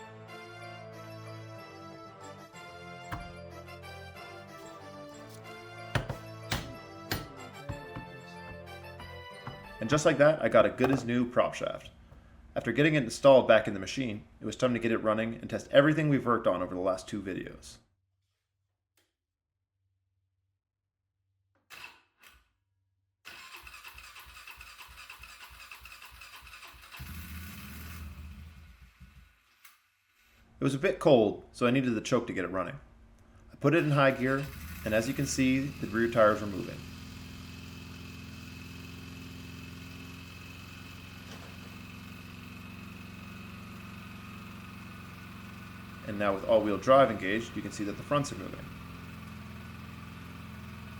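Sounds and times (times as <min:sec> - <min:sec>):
engine running: 0:02.4 - 0:13.2, 0:24.9 - 0:29.4, 0:32.9 - 0:50.9
engine starter cranking: 0:02.7 - 0:03.7, 0:04.3 - 0:08.2, 0:09.4 - 0:11.3, 0:23.3 - 0:29.0, 0:33.8 - 0:50.9.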